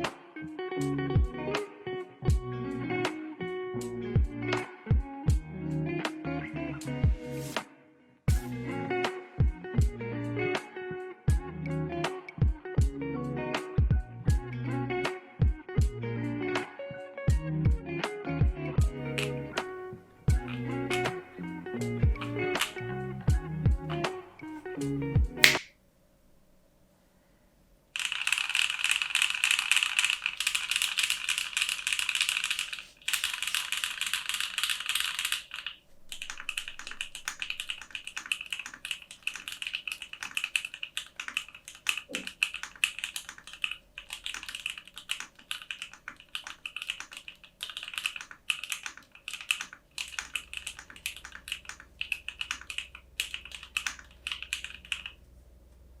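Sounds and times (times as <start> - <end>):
typing on a mechanical keyboard: 28.0 - 55.2.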